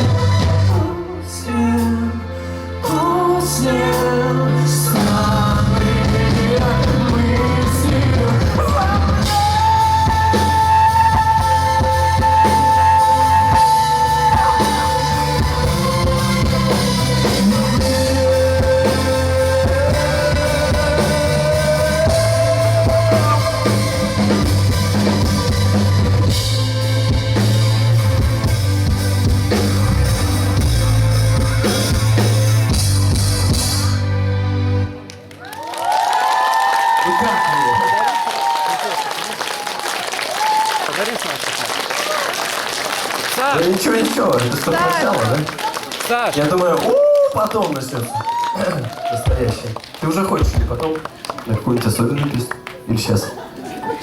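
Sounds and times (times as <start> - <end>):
person singing: 0.0 - 27.2
live rock band playing: 0.0 - 35.2.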